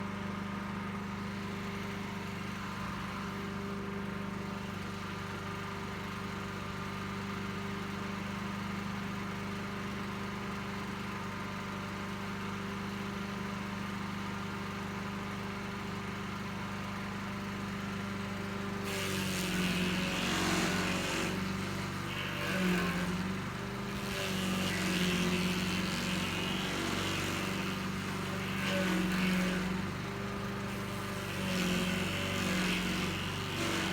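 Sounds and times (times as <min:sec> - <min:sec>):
stump grinder engine running: 0:00.1 - 0:09.7, 0:10.7 - 0:33.9
cutter wheel grinding hiss: 0:18.9 - 0:33.9.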